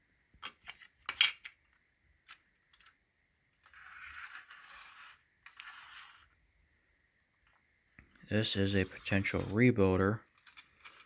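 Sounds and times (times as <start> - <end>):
plastic parts clicking and clattering: 0.4 - 3.0
scraping or rustling: 3.6 - 6.4, 8.2 - 11.0.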